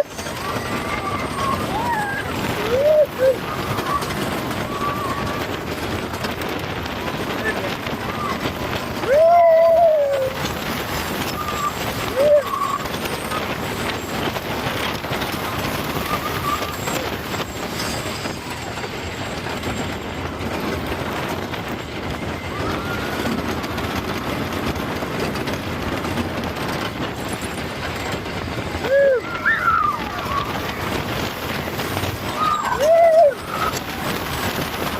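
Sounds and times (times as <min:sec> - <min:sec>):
roller coaster train rushing on track: 0:00.0 - 0:34.9
people screaming: 0:00.1 - 0:05.8, 0:08.0 - 0:13.5, 0:22.2 - 0:23.5, 0:28.8 - 0:31.6, 0:32.2 - 0:34.4.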